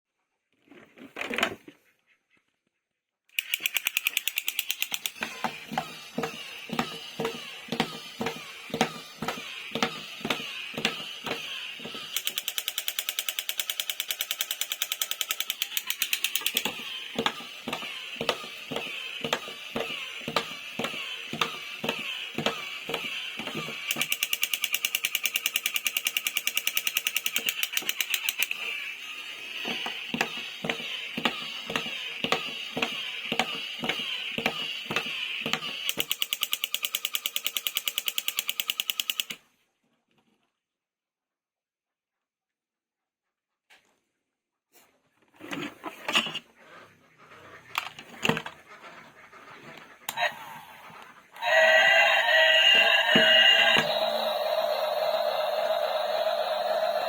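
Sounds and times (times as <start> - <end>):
rapid mechanical clicking: 3.3 - 39.4.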